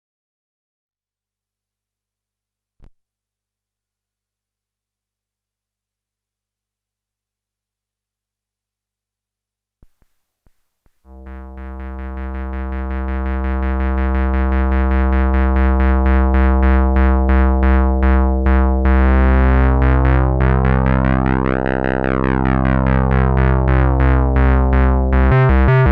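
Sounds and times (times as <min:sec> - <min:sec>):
synthesizer filter plucks: 0:11.1 - 0:25.9.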